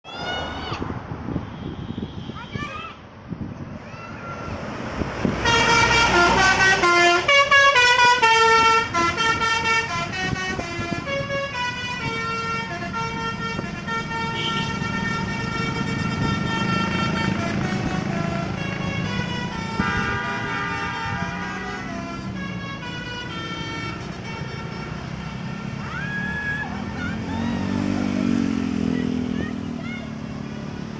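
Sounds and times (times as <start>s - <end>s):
bus engine running: 3.7s - 30.9s
musical bus horn playing notes: 5.2s - 25.8s.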